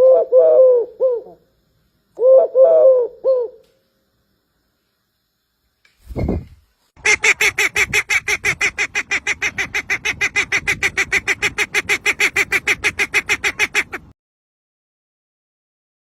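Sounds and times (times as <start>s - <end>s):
bird honking calls: 7.0s - 14.1s.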